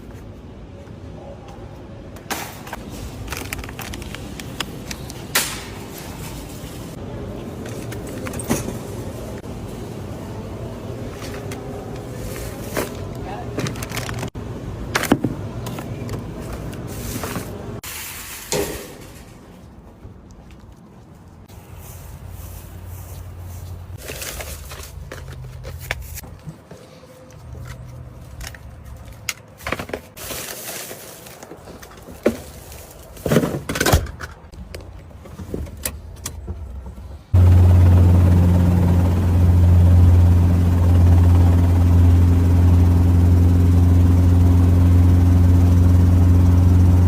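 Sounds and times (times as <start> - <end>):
handling knocks and clicks: 24.0 - 30.2
low engine drone: 37.3 - 47.0.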